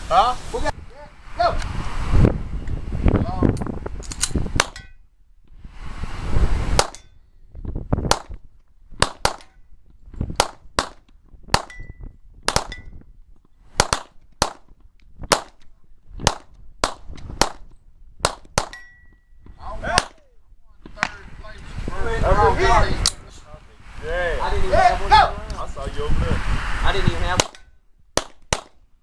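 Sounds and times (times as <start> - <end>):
steel target ringing: 4.6 - 5.1, 18.7 - 19.4
rifle shots: 9.0 - 9.6, 10.4 - 11.8, 12.5 - 12.8, 13.8 - 14.7, 28.2 - 28.8
rush of noise: 21.0 - 27.6.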